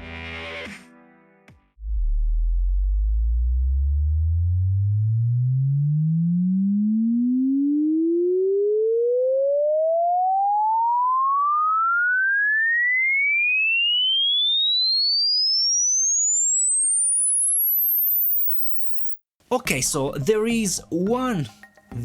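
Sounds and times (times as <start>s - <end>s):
sine tone sweeping upward: 1.8s - 19.2s.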